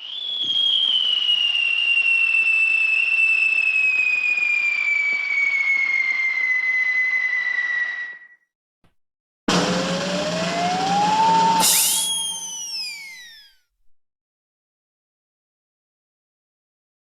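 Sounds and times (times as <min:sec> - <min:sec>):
cartoon falling whistle: 0:00.0 - 0:08.4, 0:10.8 - 0:13.7
hiss: 0:11.6 - 0:12.6.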